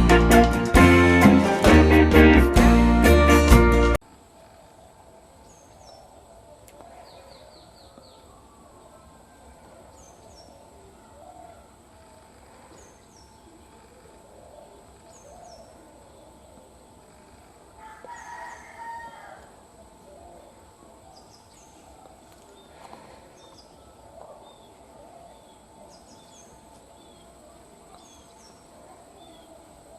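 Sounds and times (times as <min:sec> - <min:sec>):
rooster crowing: 0:17.8 - 0:19.7.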